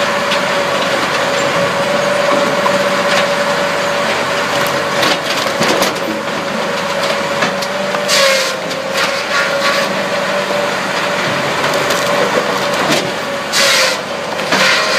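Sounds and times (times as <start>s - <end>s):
firewood processor humming: 0.0s - 14.9s
wood cracking and splintering: 4.0s - 10.0s, 11.0s - 14.9s.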